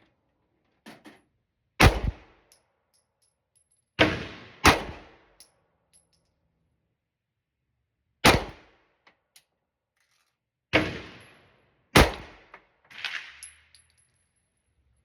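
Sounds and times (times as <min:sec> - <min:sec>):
pistol shots with echo: 0:01.8 - 0:02.3, 0:04.0 - 0:05.2, 0:08.2 - 0:08.7, 0:10.8 - 0:11.3, 0:12.0 - 0:13.4.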